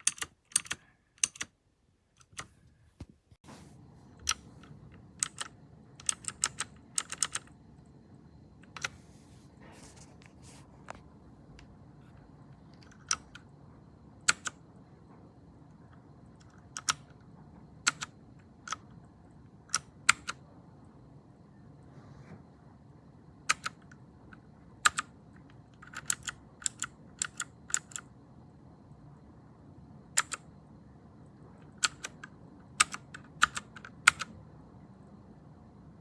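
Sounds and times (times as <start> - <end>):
mechanical keyboard keys clacking: 0.0 - 1.5, 4.2 - 7.5, 12.7 - 13.5, 14.2 - 14.6, 16.4 - 17.1, 17.8 - 18.8, 23.5 - 23.8, 24.8 - 25.1, 25.8 - 28.1, 30.1 - 30.5, 31.7 - 34.3.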